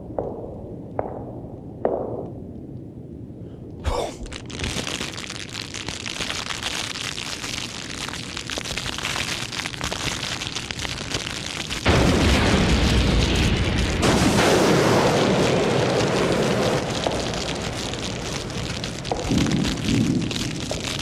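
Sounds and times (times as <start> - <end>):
dense crackling hiss: 0.0 - 21.0
sharp crack: 3.9 - 21.0.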